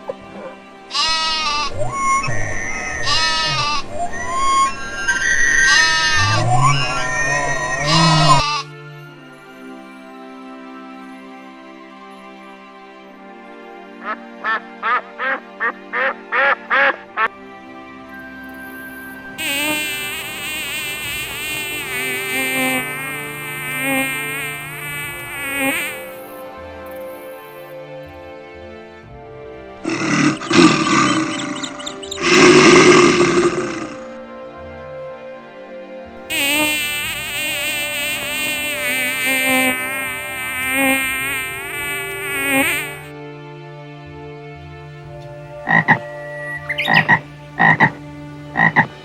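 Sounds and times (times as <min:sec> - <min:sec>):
flying insect buzzing: 0:01.0 - 0:08.7, 0:19.1 - 0:26.6, 0:29.9 - 0:34.2, 0:36.2 - 0:43.1, 0:48.6 - 0:49.0.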